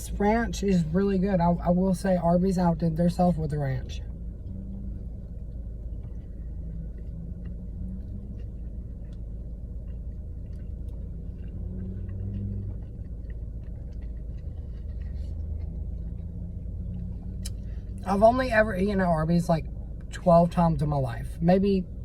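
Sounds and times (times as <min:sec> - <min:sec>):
low rumble: 0:00.0 - 0:22.0
chewing clicks and smacks: 0:04.7 - 0:17.6.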